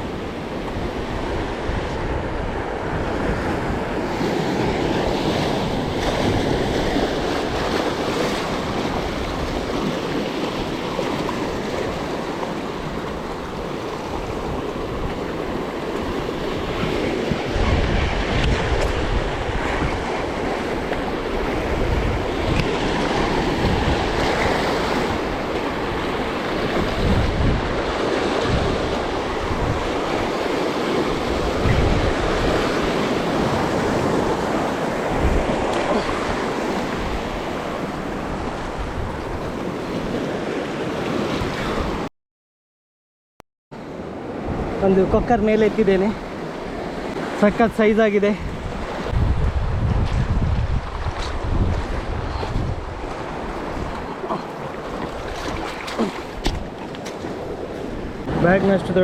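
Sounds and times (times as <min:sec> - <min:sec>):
sea surf washing: 0:00.0 - 0:42.1, 0:43.8 - 0:59.0
wind buffeting microphone: 0:00.0 - 0:42.1, 0:44.1 - 0:59.0.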